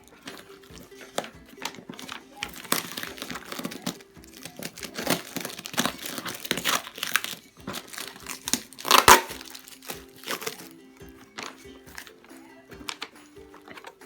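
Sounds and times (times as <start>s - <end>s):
packaging crinkling and tearing: 0.0s - 10.7s.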